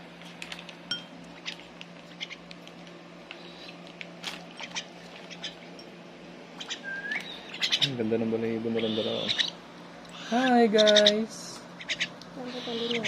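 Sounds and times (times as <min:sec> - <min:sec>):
high bird chirp: 0:06.6 - 0:07.9, 0:08.8 - 0:11.1.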